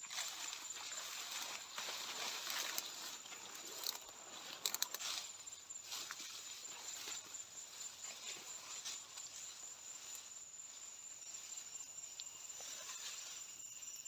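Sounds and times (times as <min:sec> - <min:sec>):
dry grass rustling: 0:00.0 - 0:11.7
high-pitched insect trill: 0:00.0 - 0:14.0
sharp clicks: 0:04.6 - 0:05.0.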